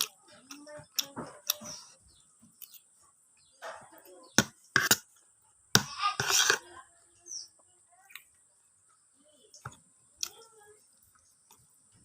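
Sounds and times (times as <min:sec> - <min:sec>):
person chewing food: 0:00.0 - 0:03.4.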